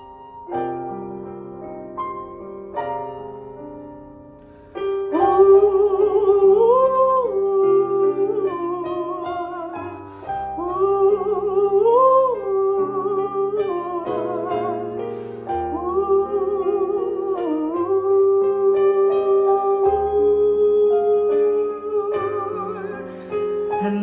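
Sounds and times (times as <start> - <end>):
piano chords: 0.0 - 24.0
solo piano notes: 0.0 - 24.0
woman singing wordless melody: 5.0 - 24.0.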